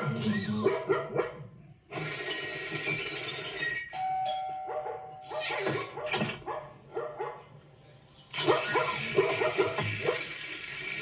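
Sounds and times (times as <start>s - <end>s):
dog barking: 0.0s - 1.5s, 4.7s - 7.5s, 8.4s - 10.4s.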